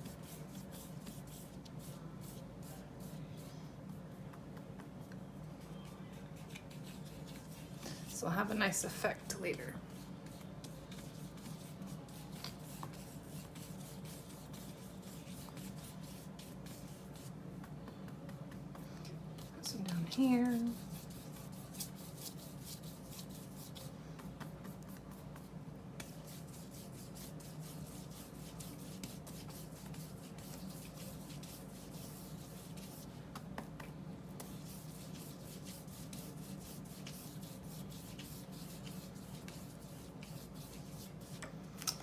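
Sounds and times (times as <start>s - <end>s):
brush scratching on paper: 6.4s - 8.8s, 9.5s - 17.3s, 19.4s - 23.9s, 24.6s - 33.2s, 34.4s - 41.4s.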